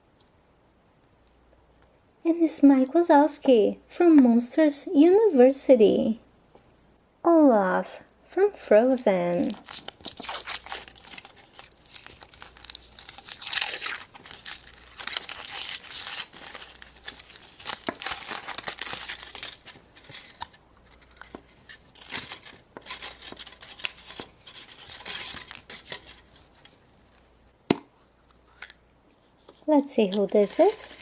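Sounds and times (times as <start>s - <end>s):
plastic wrapping crinkling: 9.1s - 27.4s, 30.0s - 31.0s.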